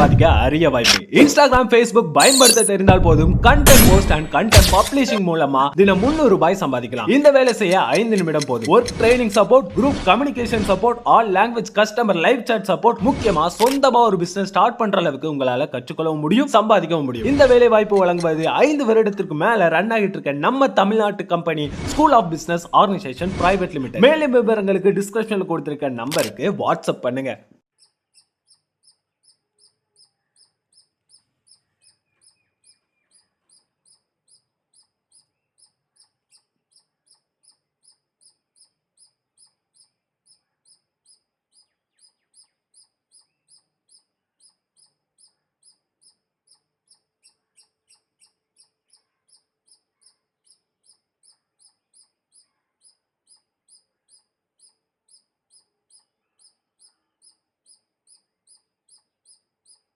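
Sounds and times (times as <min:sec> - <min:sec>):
small animal high chirps: 0:02.2 - 0:02.8, 0:07.0 - 0:09.5, 0:17.5 - 0:18.6, 0:27.8 - 0:59.9.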